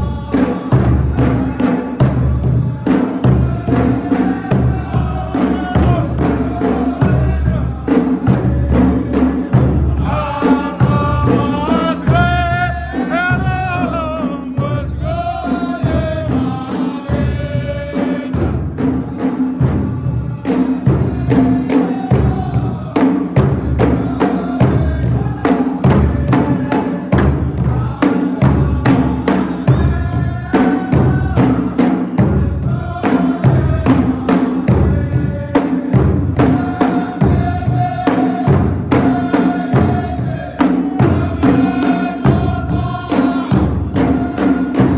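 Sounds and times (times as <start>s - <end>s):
fast drum rhythm: 0.0s - 44.9s
group chanted singing: 0.0s - 44.9s
person singing wavering melody: 10.3s - 17.5s.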